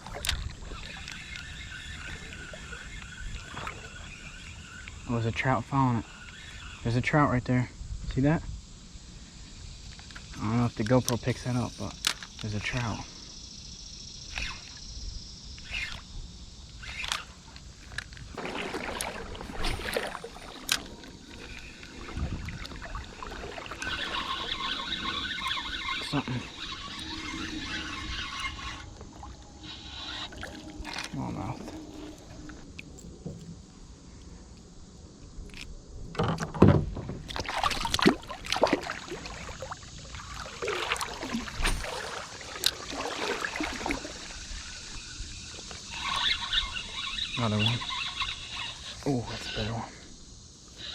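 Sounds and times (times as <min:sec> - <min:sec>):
water sloshing around legs: 0:16.8 - 0:33.5, 0:37.3 - 0:49.2.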